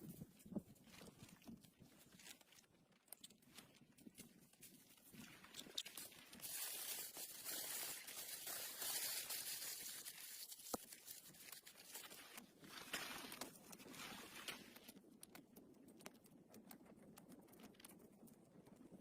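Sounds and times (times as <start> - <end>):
rustling crinkling handling noise: 0.0 - 15.0.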